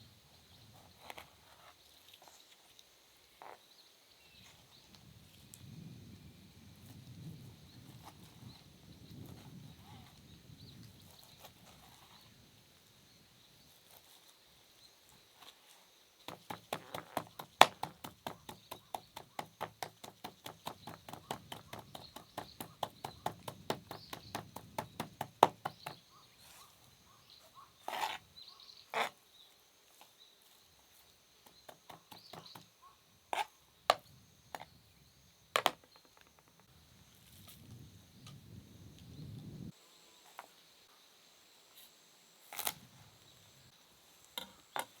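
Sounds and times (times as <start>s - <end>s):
crickets singing faintly: 0.0s - 45.0s
knife chopping on cutting board: 16.3s - 26.0s.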